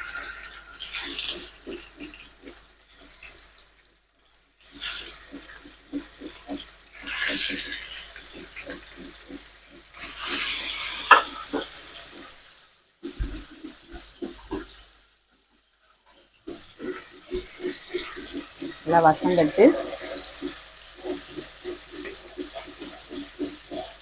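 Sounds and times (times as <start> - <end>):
fish sizzling in oil: 0.0 - 24.0
bubbling oil pops: 4.6 - 15.5.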